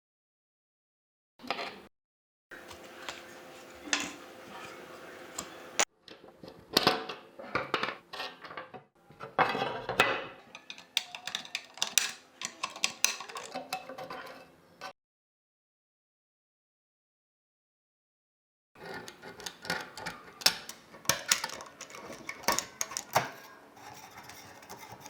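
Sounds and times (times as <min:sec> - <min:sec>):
steady hum with clicks: 0:02.5 - 0:05.9
small metal parts clinking: 0:10.5 - 0:13.9, 0:18.8 - 0:25.0.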